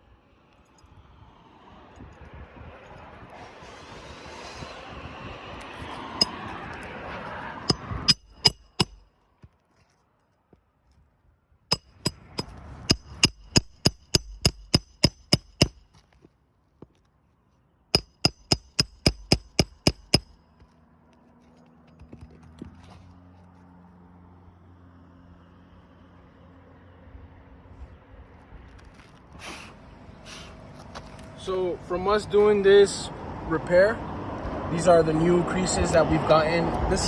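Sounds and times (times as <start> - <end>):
hammer striking metal: 6.2 - 6.5, 7.7 - 9.0, 11.7 - 15.8, 18.0 - 20.3.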